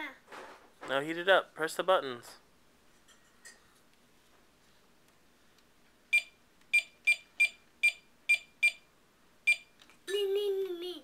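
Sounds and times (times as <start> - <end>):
toy microwave beeping: 6.1 - 8.8, 9.5 - 9.7.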